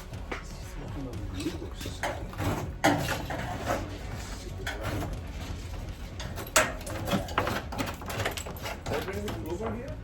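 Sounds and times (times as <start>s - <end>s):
knocks and scrapes on metal: 1.8s - 9.8s.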